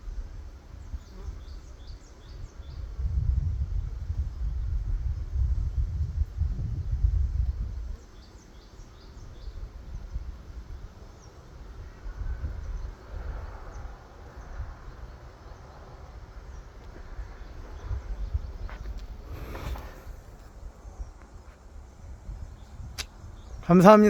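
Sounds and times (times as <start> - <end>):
low rumble on microphone: 2.4 - 8.0.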